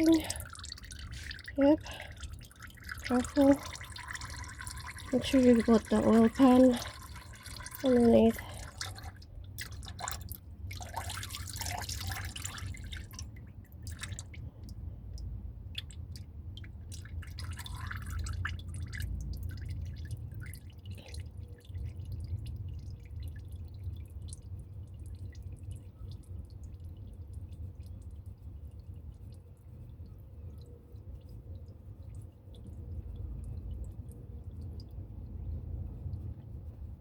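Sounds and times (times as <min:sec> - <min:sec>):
oil dripping into pan: 0:00.0 - 0:30.7
steady low rumble: 0:00.0 - 0:37.0.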